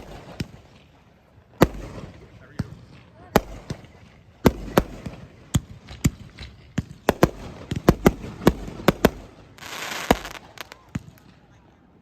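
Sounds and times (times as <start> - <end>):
fireworks bangs: 0.0 - 1.0, 1.6 - 11.5
hissing crackle: 8.9 - 11.2.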